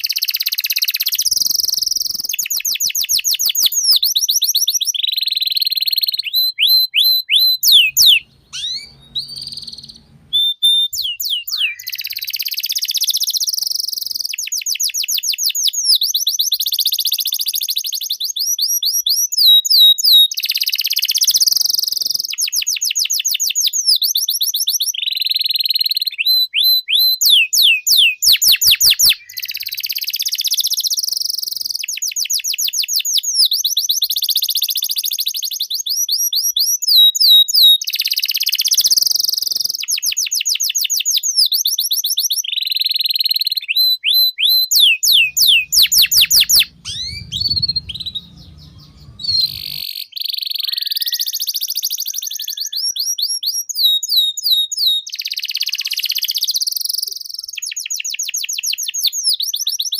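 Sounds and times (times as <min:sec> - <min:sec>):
canary singing trills: 0:05.1 - 0:14.3, 0:43.6 - 0:53.8
low hum: 0:08.2 - 0:10.4, 0:45.2 - 0:49.8.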